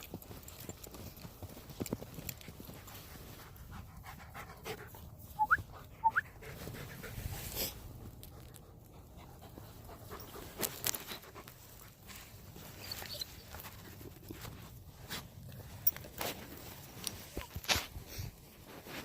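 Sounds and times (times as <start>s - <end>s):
dog panting: 2.8s - 12.0s
footsteps crunching in snow: 10.1s - 19.0s.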